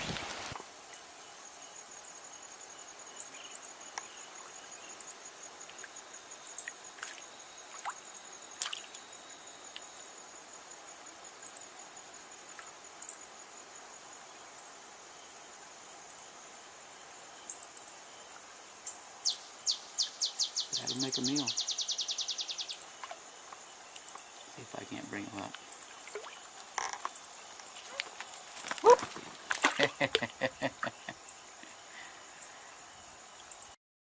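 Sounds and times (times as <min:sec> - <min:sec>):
faint ticks and chirps: 0:00.0 - 0:33.8
insects droning: 0:00.0 - 0:33.8
pulsing insect trill: 0:17.4 - 0:29.0, 0:29.6 - 0:33.7.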